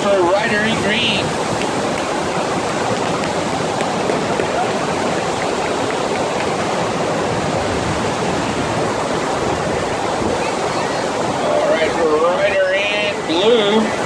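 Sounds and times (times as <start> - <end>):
rushing water: 0.0 - 14.0.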